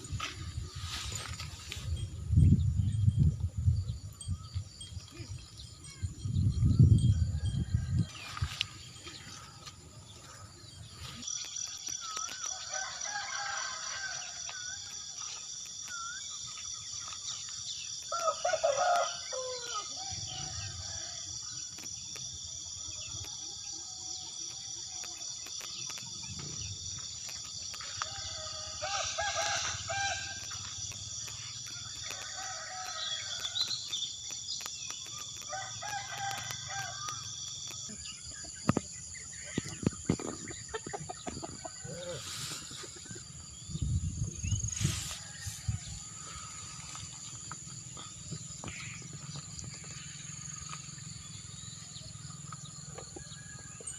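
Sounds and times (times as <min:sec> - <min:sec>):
roosters crowing: 0:07.2 - 0:15.6, 0:17.9 - 0:21.8, 0:26.6 - 0:38.6, 0:40.0 - 0:43.7, 0:44.4 - 0:53.9
chickens clucking: 0:37.8 - 0:43.4.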